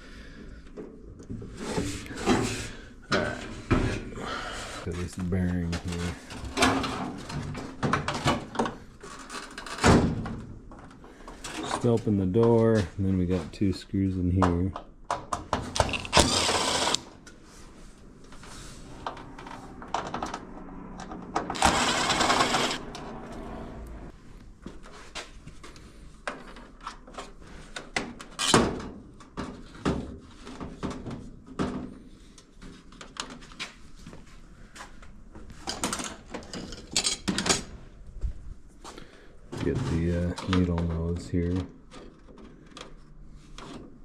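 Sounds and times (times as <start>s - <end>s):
tools and metal parts clicking: 15.8s - 17.0s, 35.7s - 37.7s
cordless drill running: 15.9s - 17.1s, 21.6s - 22.8s.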